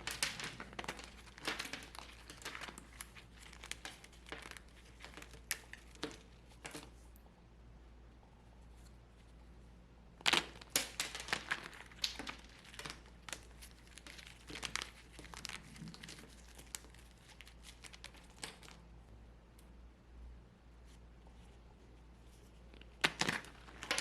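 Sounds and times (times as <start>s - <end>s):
brittle soap crackling and crumbling: 0.0s - 7.0s, 10.2s - 18.9s, 22.2s - 24.0s.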